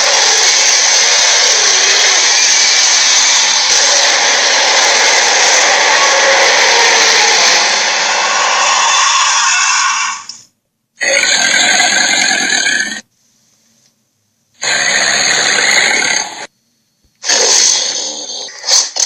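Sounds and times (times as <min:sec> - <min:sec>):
giant creature calls: 0:00.0 - 0:10.4.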